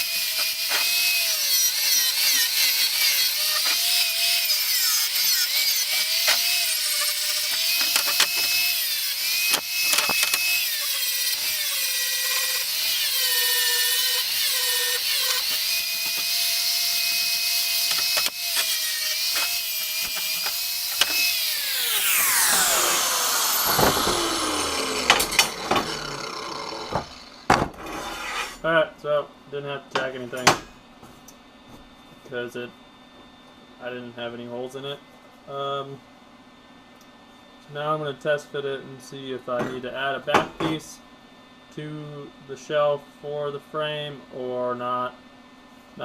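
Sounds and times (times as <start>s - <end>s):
grinder winding down whine: 0.0s - 27.5s
angle grinder grinding metal: 0.0s - 28.7s.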